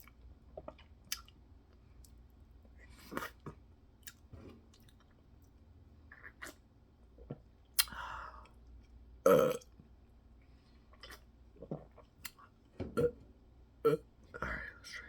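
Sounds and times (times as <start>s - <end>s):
open-mouth chewing: 0.0s - 1.4s
person burping: 9.2s - 9.7s, 13.0s - 13.2s, 13.8s - 14.1s.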